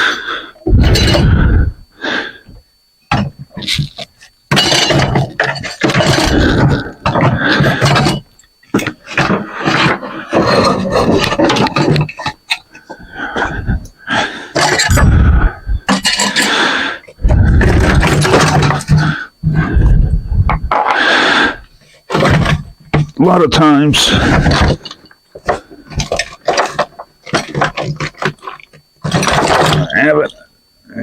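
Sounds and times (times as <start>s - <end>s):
metal parts clattering and scraping: 0.8s - 1.4s, 3.2s - 13.9s, 14.5s - 15.3s, 15.9s - 16.6s, 17.3s - 21.0s, 24.0s - 30.1s.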